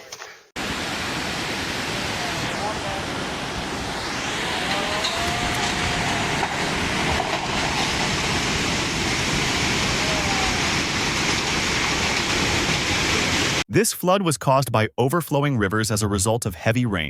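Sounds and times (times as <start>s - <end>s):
roar of rushing water: 0.6s - 13.6s.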